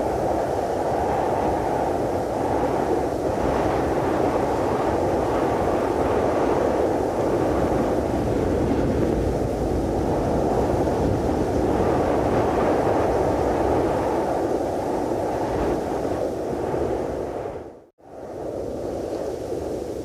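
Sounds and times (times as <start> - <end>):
steady rushing wind: 0.0 - 20.0
deep rumble: 7.1 - 13.6.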